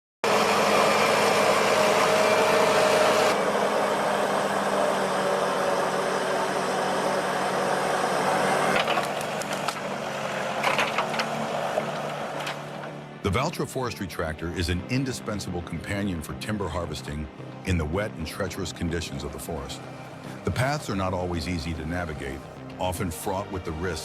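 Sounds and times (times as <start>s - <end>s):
heavy machine engine running: 0.2s - 13.3s.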